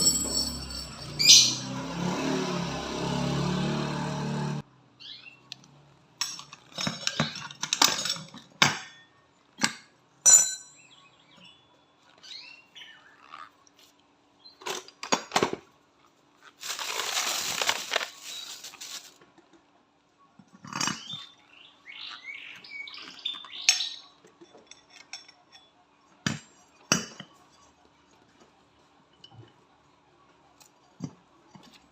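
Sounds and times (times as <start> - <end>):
metal tools clinking and knocking: 0.0 - 1.5, 6.2 - 10.8, 23.7 - 25.7.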